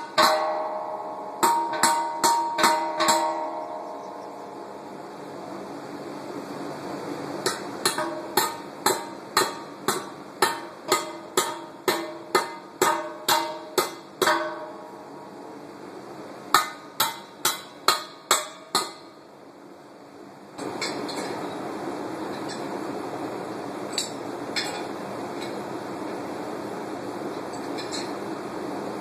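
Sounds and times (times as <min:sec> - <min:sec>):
hammer striking steel bolts: 0:00.0 - 0:04.0, 0:07.5 - 0:14.8, 0:16.5 - 0:19.1.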